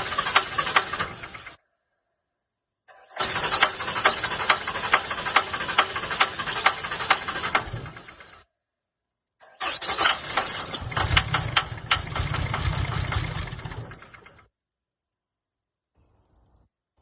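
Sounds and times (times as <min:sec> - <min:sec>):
diesel engine cranking without firing: 0:00.0 - 0:01.6, 0:02.9 - 0:08.4, 0:09.4 - 0:14.5.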